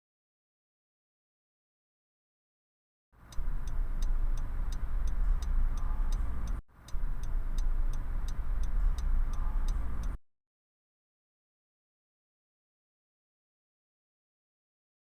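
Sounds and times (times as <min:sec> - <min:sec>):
steady high ticking: 0:03.2 - 0:10.2.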